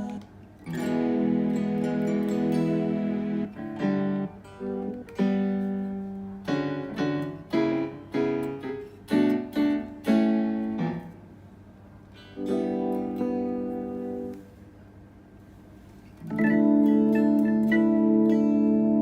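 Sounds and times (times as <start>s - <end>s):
guitar synthesizer plucked chords: 0.0s - 11.2s, 12.2s - 14.5s, 16.2s - 19.0s.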